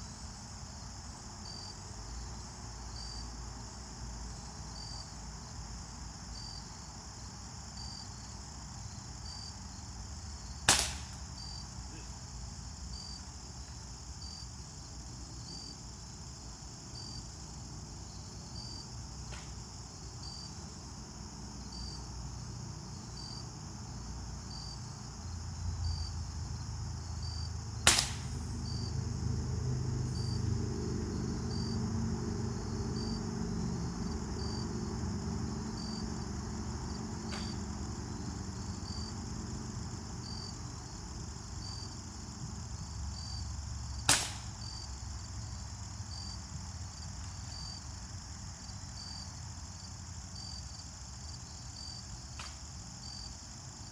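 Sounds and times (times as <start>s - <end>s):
crickets chirring: 0.0s - 53.9s
pellet gun shots: 10.6s - 11.2s, 27.8s - 28.5s, 37.3s - 37.6s, 44.1s - 44.6s.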